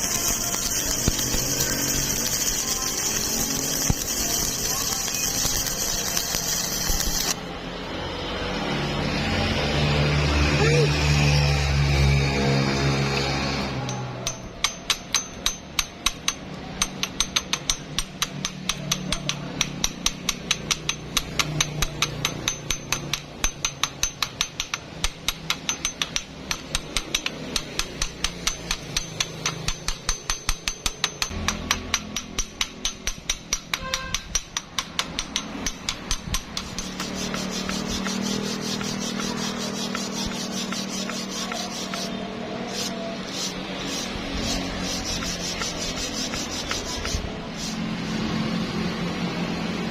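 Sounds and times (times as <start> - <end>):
hammer tapping steel: 0.0 - 7.4, 13.6 - 47.7
scraping on metal: 12.4 - 48.0.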